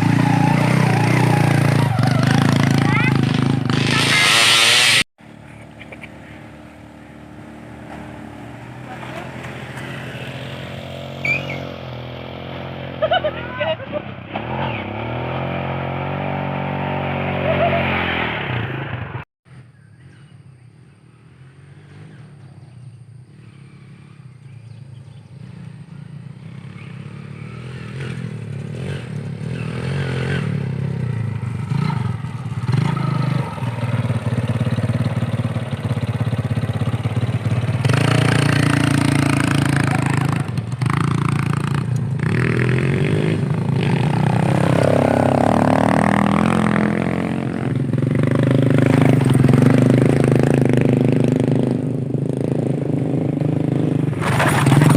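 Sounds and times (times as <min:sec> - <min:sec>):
motorcycle engine revving: 0:00.0 - 0:19.2, 0:21.0 - 0:54.9.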